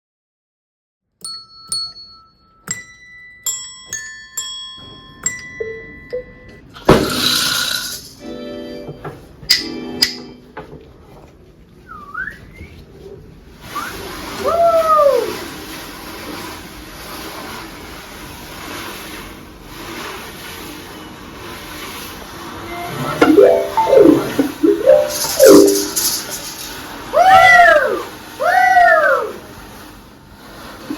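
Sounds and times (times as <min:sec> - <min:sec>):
metal percussion notes ringing: 0:01.2 - 0:08.4, 0:09.5 - 0:10.5, 0:22.7 - 0:26.7
steady rushing hiss: 0:25.1 - 0:27.1.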